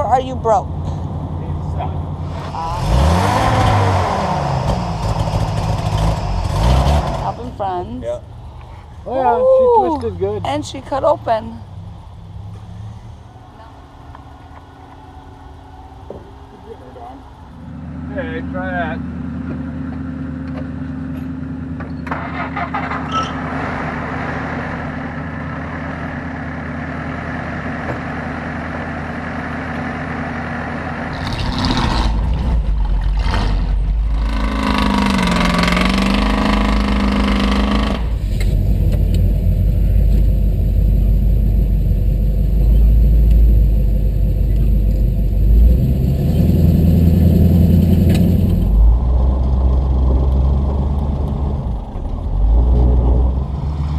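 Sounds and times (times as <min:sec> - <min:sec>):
truck engine idling and revving: 0:00.0 - 0:53.9.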